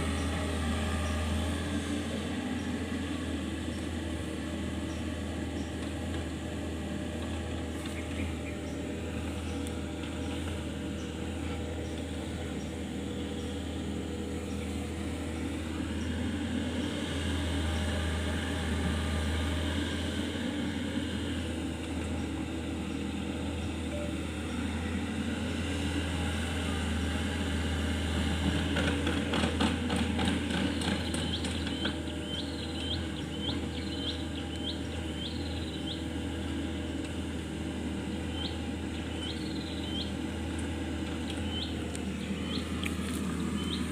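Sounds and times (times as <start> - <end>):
mini excavator engine running: 0.0 - 43.9.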